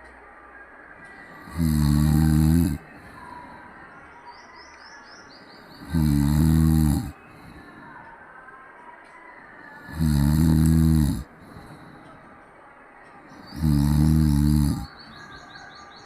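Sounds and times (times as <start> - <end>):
quiet breathing: 0.0 - 16.0
cat snoring: 1.4 - 2.8, 5.8 - 7.2, 9.8 - 11.9, 13.5 - 15.0.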